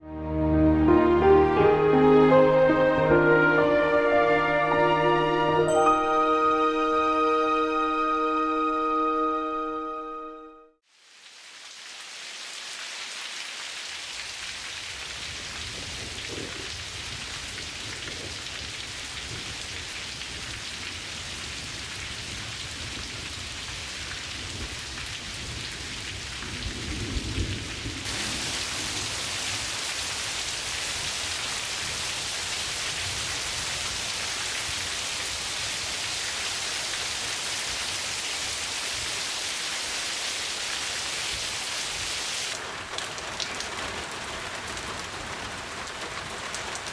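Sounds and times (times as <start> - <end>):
heavy rain falling: 10.9 - 46.9
low rumble of thunder: 15.1 - 29.8.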